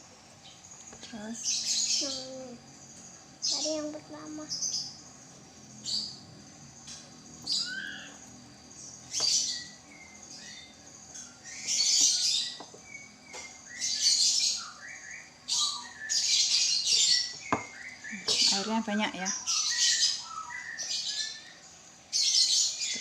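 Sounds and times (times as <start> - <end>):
bird chirps: 0.4 - 23.0
bird squawking: 7.4 - 8.2.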